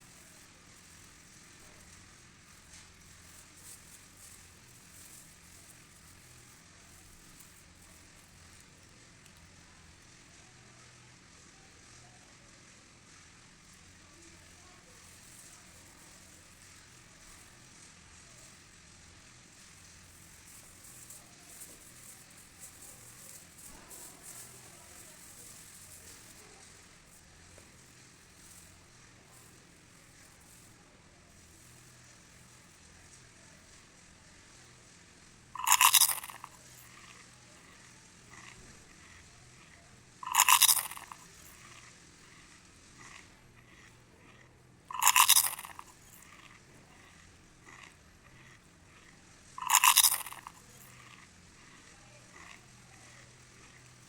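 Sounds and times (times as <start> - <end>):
crispy food being chewed: 0.0 - 10.8, 13.0 - 54.0.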